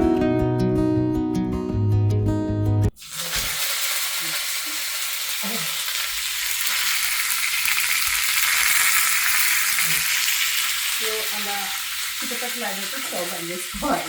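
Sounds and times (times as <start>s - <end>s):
leaves sizzling in hot oil: 2.9s - 14.0s.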